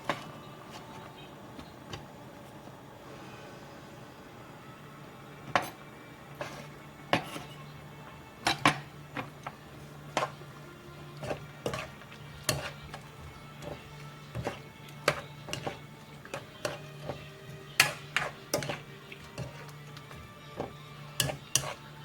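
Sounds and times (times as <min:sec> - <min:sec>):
dishes and utensils clattering: 0:08.4 - 0:09.4, 0:11.2 - 0:20.0, 0:20.6 - 0:21.8.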